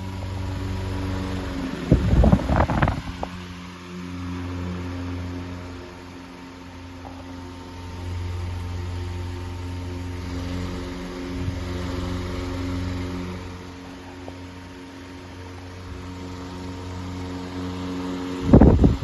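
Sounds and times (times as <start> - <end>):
rush of moving air: 0.0 - 3.6, 18.4 - 19.0
electric fan motor hum: 0.0 - 19.0.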